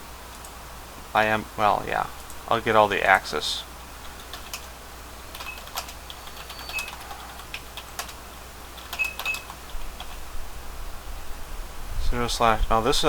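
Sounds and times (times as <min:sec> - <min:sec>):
keyboard typing: 0:04.0 - 0:08.2, 0:08.8 - 0:10.2.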